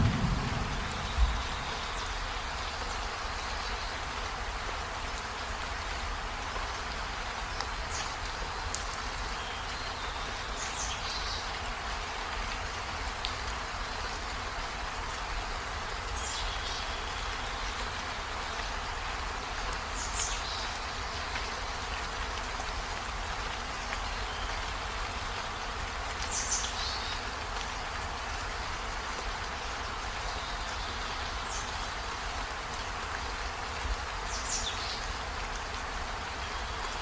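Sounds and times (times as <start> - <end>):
low rumble: 0.0 - 2.4
steady rain falling: 0.0 - 37.0.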